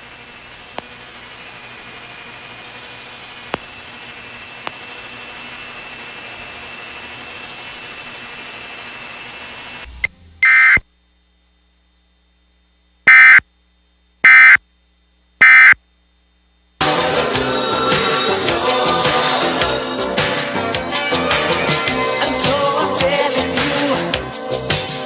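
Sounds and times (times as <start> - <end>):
static hiss with high whine: 0.0 - 16.8
emergency alert data tones: 10.4 - 10.8, 13.1 - 13.4, 14.2 - 14.6, 15.4 - 15.8.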